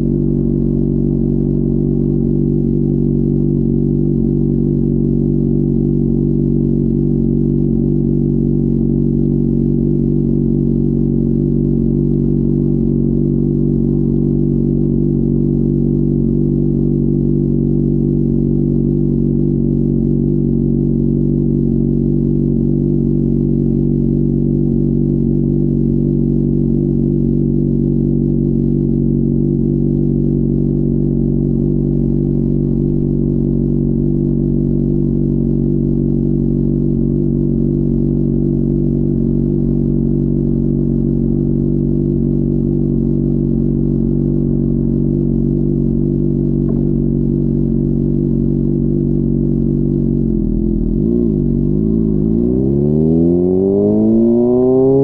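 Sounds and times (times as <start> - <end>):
motorcycle engine idling: 0.0 - 54.1.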